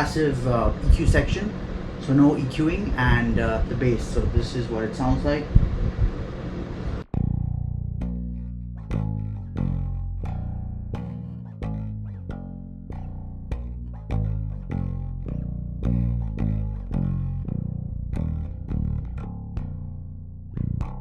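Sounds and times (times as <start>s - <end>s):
electric bass plucked notes: 0.0s - 4.6s, 7.0s - 21.0s.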